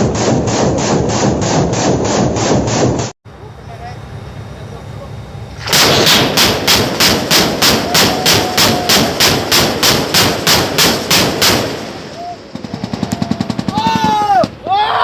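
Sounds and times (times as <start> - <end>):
deck gun firing burst: 0.0 - 3.1, 5.6 - 14.2.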